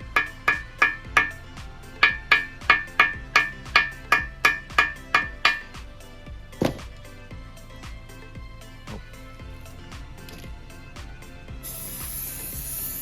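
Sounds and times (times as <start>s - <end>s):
hammer ringing on metal: 0.1s - 1.4s, 2.0s - 5.7s
dull deep knock: 6.6s - 7.0s.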